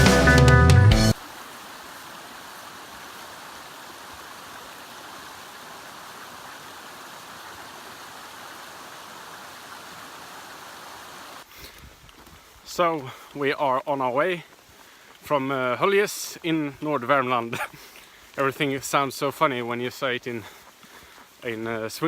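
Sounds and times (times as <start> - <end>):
flowing water rushing: 1.1 - 11.6.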